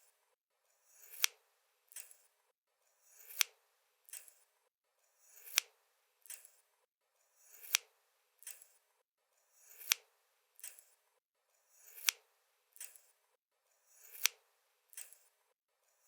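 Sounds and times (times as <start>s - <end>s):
scissors opening and snapping shut: 9.8s - 10.0s.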